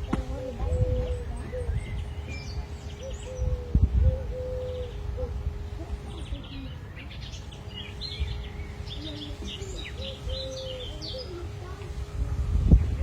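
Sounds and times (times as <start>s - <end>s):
dove cooing: 0.0s - 7.2s, 7.8s - 12.0s
small birds chirping: 0.0s - 13.0s.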